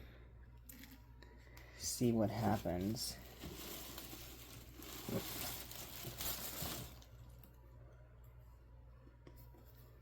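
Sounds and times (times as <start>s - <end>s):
packaging rustling: 2.4s - 7.5s.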